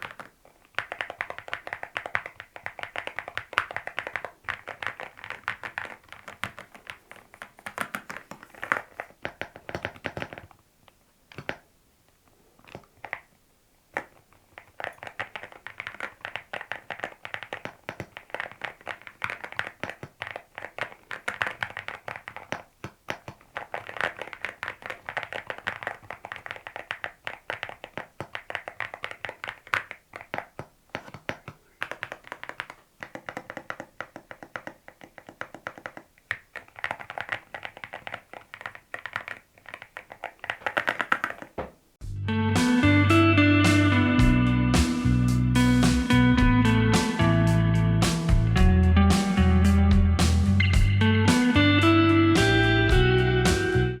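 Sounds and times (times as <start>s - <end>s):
mechanical keyboard typing: 0.0s - 10.6s, 11.3s - 11.7s, 12.6s - 41.9s
electric guitar music: 42.0s - 54.0s.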